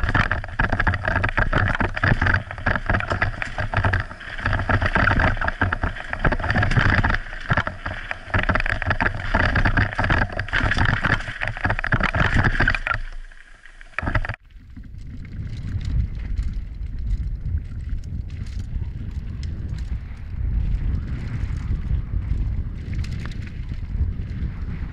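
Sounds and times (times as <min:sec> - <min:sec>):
bike rattling on rough trail: 0:00.0 - 0:24.9
low rumble: 0:14.4 - 0:24.9
wind buffeting: 0:14.6 - 0:24.9.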